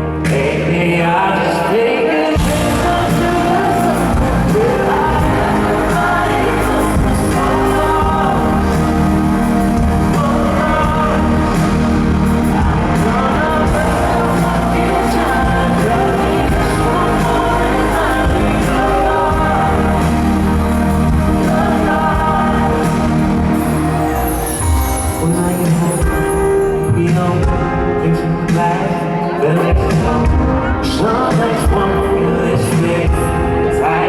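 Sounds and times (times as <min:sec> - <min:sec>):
live pop band playing: 0:00.0 - 0:34.0
man singing lead vocal: 0:00.0 - 0:34.0.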